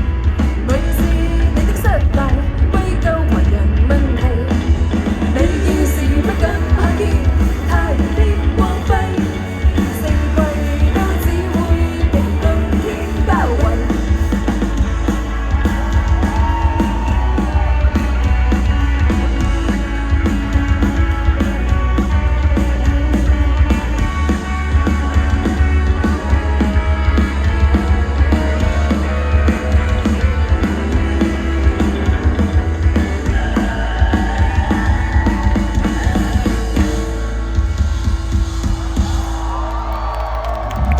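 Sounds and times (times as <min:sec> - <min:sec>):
live band playing: 0:00.0 - 0:39.6
drum kit: 0:00.0 - 0:40.9
heavy bass: 0:00.0 - 0:40.9
person singing: 0:05.3 - 0:14.2.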